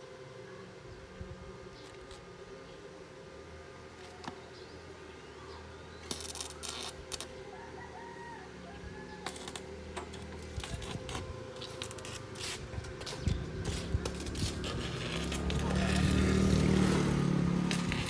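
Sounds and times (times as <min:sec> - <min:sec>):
steady low hum: 0:00.0 - 0:18.0
rooster crowing: 0:07.4 - 0:11.0.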